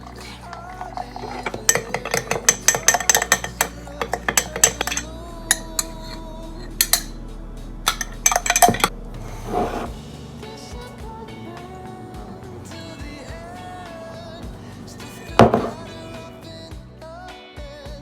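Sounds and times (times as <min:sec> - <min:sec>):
soft background music: 0:00.0 - 0:18.0
metal utensil clinking dishware: 0:00.4 - 0:07.2, 0:07.9 - 0:09.9, 0:15.4 - 0:15.8.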